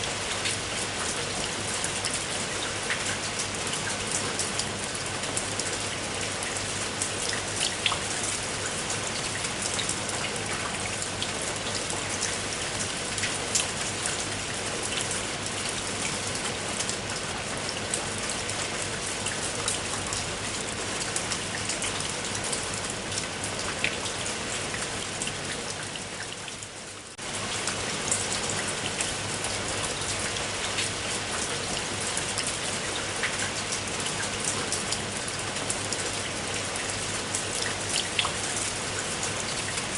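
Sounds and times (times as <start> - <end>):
rain falling: 0.0 - 39.9.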